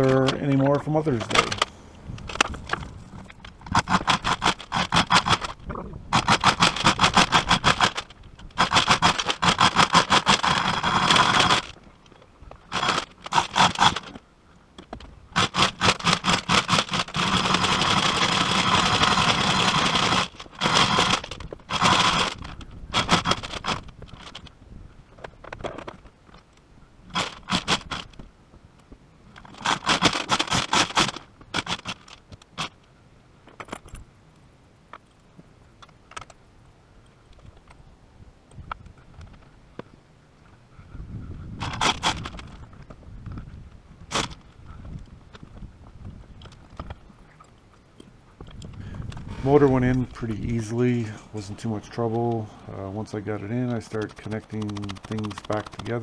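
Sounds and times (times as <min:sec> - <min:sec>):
rapid ratcheting clicks: 0:48.8 - 0:56.0.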